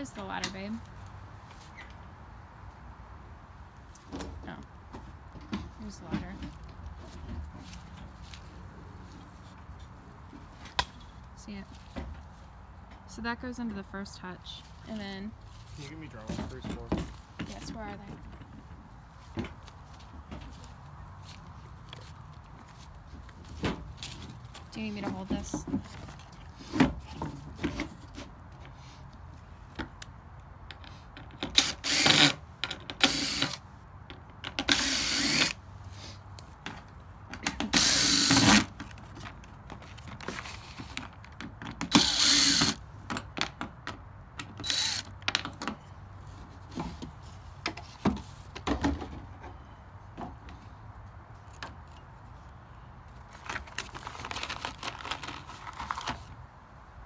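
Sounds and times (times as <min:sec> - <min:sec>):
power drill driving screws: 0:31.5 - 0:32.4, 0:33.0 - 0:33.6, 0:34.6 - 0:35.6, 0:37.7 - 0:38.7, 0:41.9 - 0:42.8, 0:44.6 - 0:45.1
handling clicks and knocks: 0:53.3 - 0:56.4.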